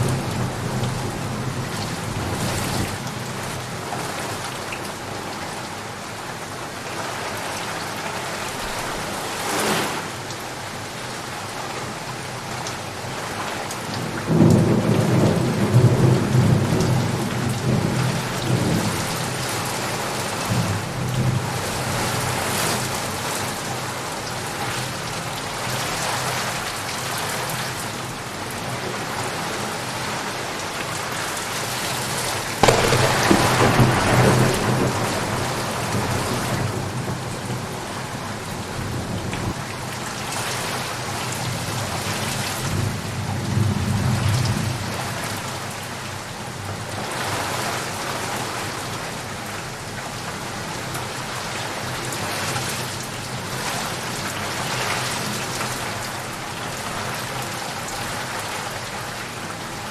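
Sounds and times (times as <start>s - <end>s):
steady rain falling: 0.0s - 59.9s
thunderclap rumbling: 32.6s - 39.6s.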